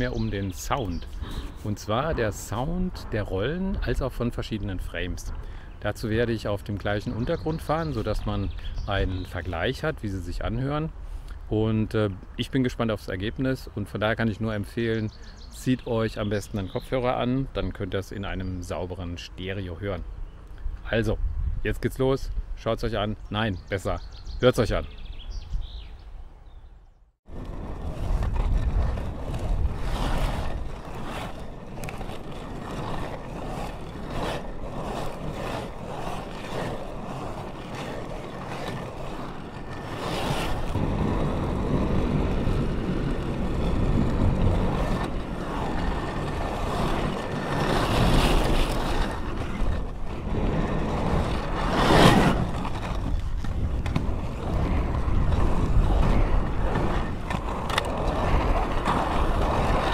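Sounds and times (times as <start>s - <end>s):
skate scraping swish: 0.0s - 2.7s, 27.3s - 59.9s
inline skates rolling on pavement: 0.0s - 20.8s, 23.2s - 59.9s.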